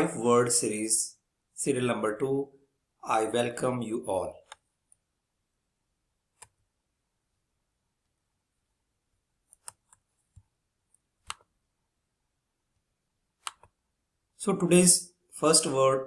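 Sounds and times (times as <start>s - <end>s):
sharp clicks: 13.4s - 13.8s.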